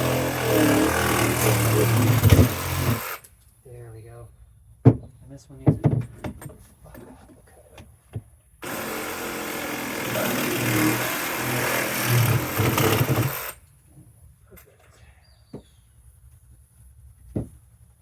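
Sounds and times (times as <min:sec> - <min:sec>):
power tool running: 0:00.0 - 0:03.2, 0:08.6 - 0:13.6.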